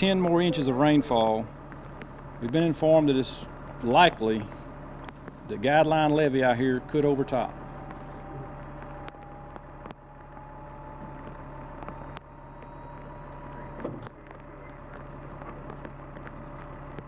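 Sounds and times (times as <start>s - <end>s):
engine running: 0.0s - 17.0s.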